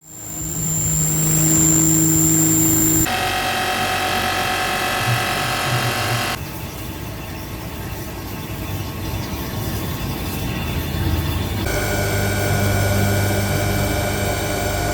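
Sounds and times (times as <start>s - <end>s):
milling machine spindle whine: 0.0s - 6.4s, 11.7s - 14.9s.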